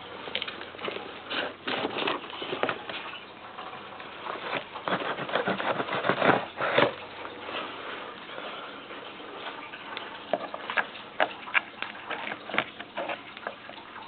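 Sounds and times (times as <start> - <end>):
cardboard box tearing open: 4.9 - 7.0.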